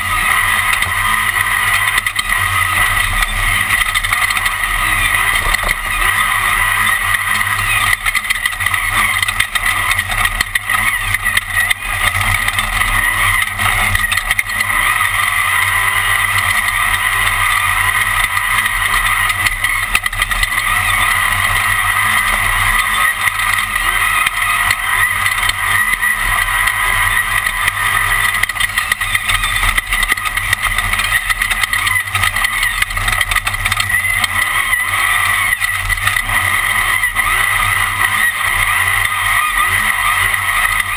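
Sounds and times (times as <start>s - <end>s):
race car engine droning: 0.0s - 40.9s.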